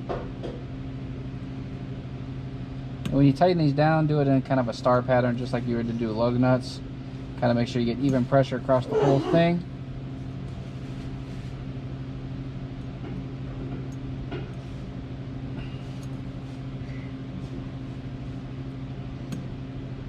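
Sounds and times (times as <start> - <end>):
low machine hum: 0.0 - 20.0.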